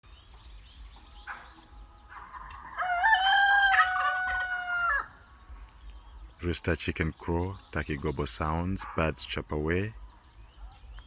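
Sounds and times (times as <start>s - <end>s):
rooster crowing: 2.6s - 5.2s.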